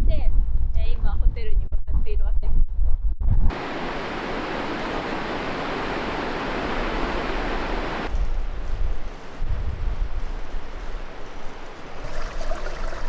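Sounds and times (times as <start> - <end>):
wind rumble on microphone: 0.0 - 3.5, 6.8 - 12.3
flowing river water: 3.6 - 8.1, 12.0 - 13.0.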